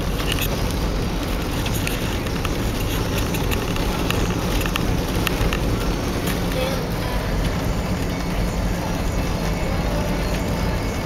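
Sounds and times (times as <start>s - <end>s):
car road and engine noise: 0.0s - 11.0s.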